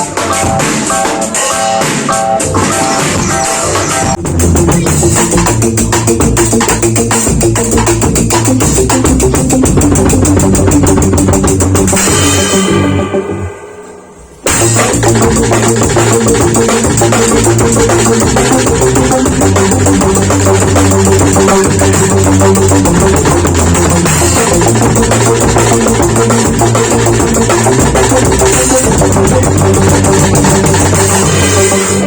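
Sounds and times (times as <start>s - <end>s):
backing track with bass and guitar: 0.0s - 13.6s, 14.5s - 32.0s
drum kit playing: 0.0s - 32.0s
cymbals: 11.4s - 32.0s.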